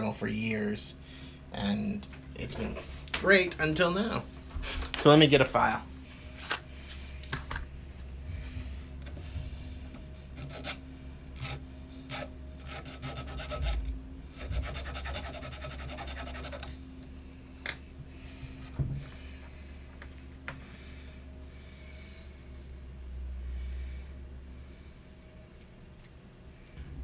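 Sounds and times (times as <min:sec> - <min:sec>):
metal file scraping: 0:10.3 - 0:10.8, 0:11.4 - 0:16.8.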